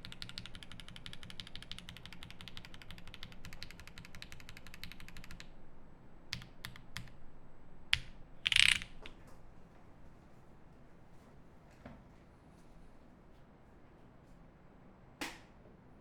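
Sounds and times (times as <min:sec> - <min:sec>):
fast typing on mechanical keyboard: 0:00.0 - 0:05.5, 0:06.3 - 0:07.2, 0:07.9 - 0:09.1.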